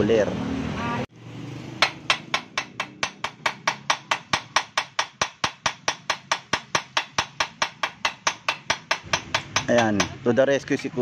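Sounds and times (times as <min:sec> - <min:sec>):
hammer tapping on metal: 0:01.8 - 0:10.2.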